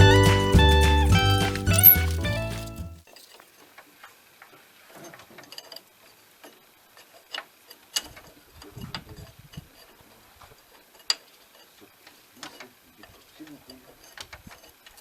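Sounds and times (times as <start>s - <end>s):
metal hand tools clicking: 1.4s - 3.4s.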